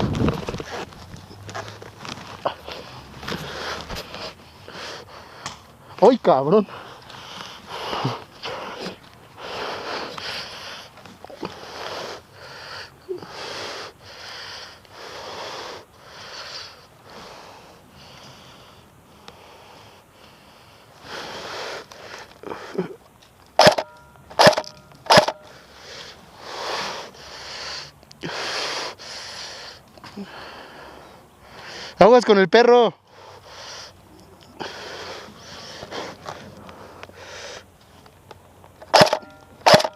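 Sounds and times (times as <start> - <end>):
heavy rhythmic breathing: 0.0 - 39.9
sharp cracks: 23.4 - 25.6, 38.3 - 39.9.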